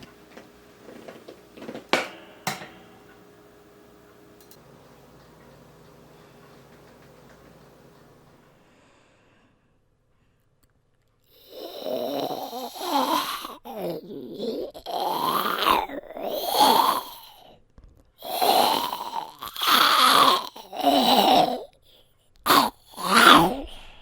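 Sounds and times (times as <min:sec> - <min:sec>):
person growling like a zombie: 0:11.4 - 0:17.5, 0:18.2 - 0:21.8, 0:22.5 - 0:24.0.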